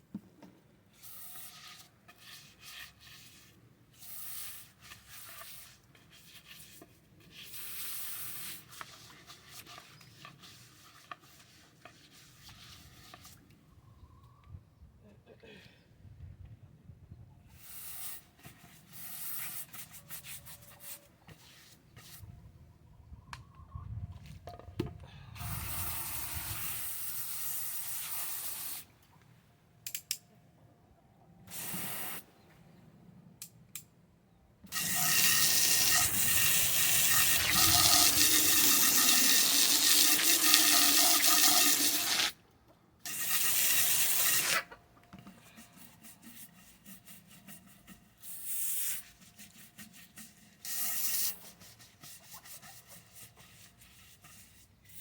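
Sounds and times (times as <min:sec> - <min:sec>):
water running from hose: 0:34.8 - 0:42.3.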